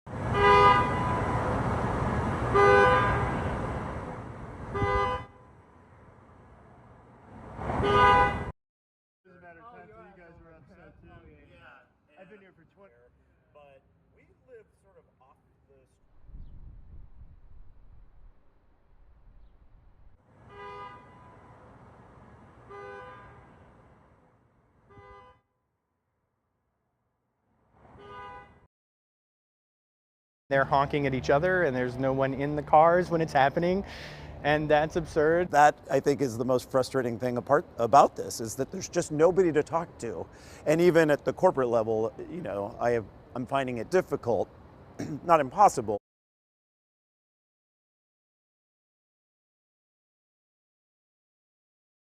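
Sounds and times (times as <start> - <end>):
vehicle rumble: 0.1 - 8.5, 30.5 - 46.0
car horns honking: 0.2 - 3.9, 4.6 - 5.6, 7.8 - 8.5, 20.4 - 21.8, 22.6 - 23.8, 24.9 - 25.4, 27.9 - 28.7.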